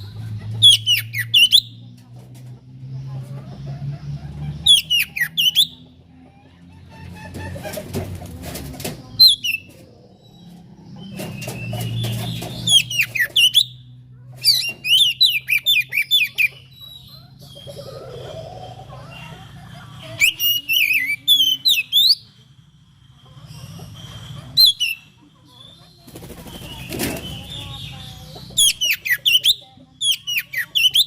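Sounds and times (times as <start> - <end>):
bird singing whistled notes: 0.6 - 1.8, 24.0 - 25.1.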